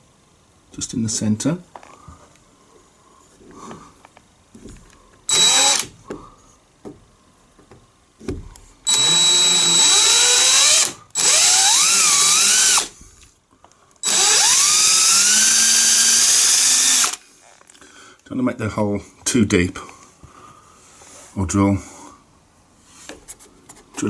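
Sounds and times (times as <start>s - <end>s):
power drill boring into wood: 5.3s - 5.9s, 8.9s - 12.9s, 14.0s - 17.2s.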